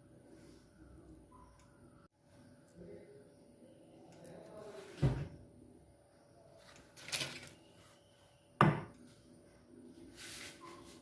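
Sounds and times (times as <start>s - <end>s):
soft rustle: 10.0s - 11.0s.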